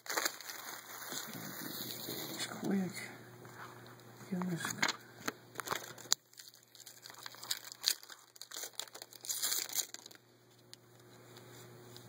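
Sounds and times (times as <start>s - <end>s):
wrapper tearing and crinkling: 0.0s - 2.6s, 4.8s - 10.7s.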